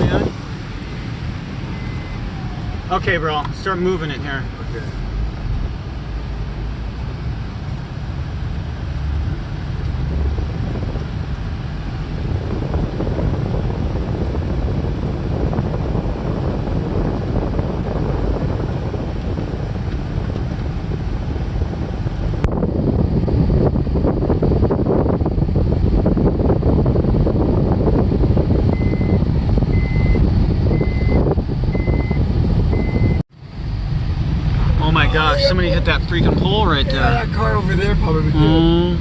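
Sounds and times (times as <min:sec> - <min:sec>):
wind buffeting on microphone: 0:00.0 - 0:39.0.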